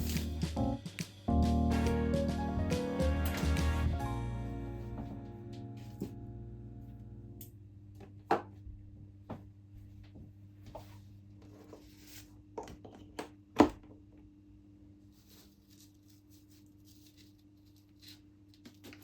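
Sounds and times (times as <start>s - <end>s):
background music: 0.0s - 7.4s.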